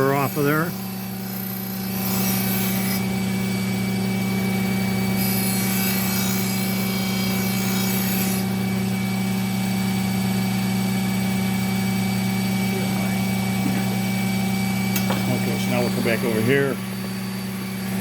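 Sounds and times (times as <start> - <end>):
powered strop motor hum: 8.4 - 18.0.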